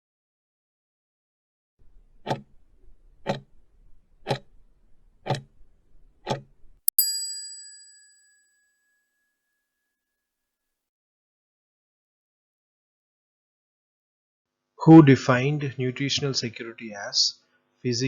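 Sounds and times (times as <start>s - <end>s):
clock ticking: 2.2s - 2.4s, 3.2s - 3.5s
bell-like ding: 6.9s - 9.7s.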